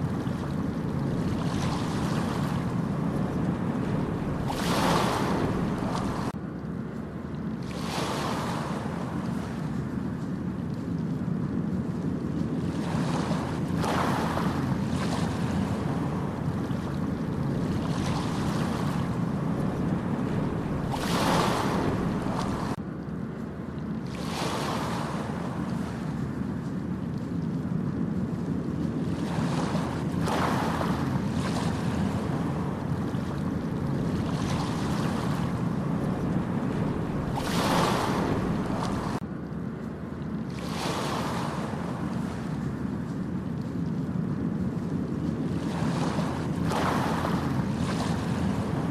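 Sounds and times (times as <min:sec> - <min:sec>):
ocean waves breaking: 0:00.0 - 0:06.4, 0:07.5 - 0:22.8, 0:24.0 - 0:39.3, 0:40.0 - 0:48.9
steady low rumble: 0:00.0 - 0:07.6, 0:09.0 - 0:24.1, 0:25.2 - 0:40.7.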